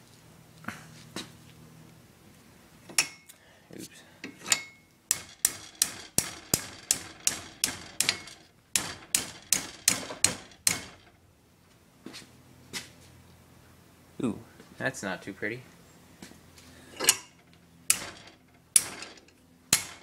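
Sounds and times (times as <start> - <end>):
hammer striking metal: 4.5 - 11.1, 17.1 - 20.0.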